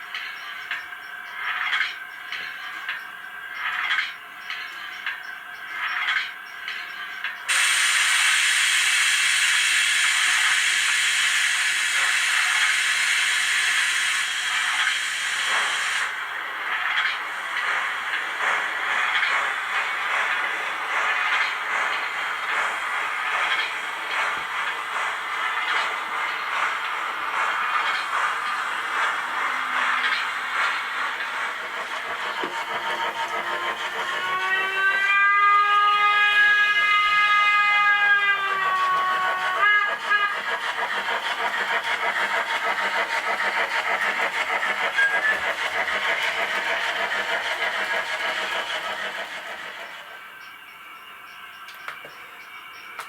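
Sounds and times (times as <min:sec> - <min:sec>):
loud steam hiss: 0:07.5 - 0:50.4
rapid pulsing steam chuffs: 0:07.5 - 0:51.6.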